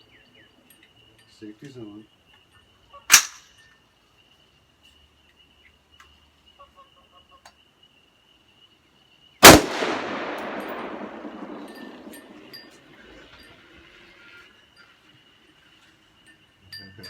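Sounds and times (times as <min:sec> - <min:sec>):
rifle shot with rolling echo: 0:09.4 - 0:13.0
sharp crack: 0:09.4 - 0:13.0.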